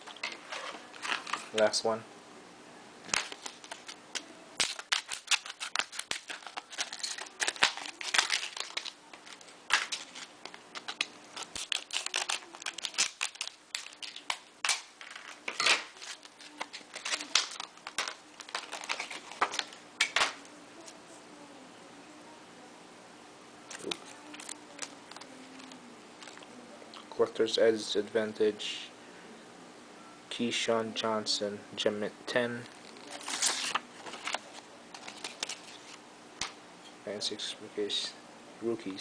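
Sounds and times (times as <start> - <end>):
plastic packaging clicks and crinkles: 0.0 - 1.7, 3.1 - 20.4, 23.7 - 27.0, 32.6 - 36.6.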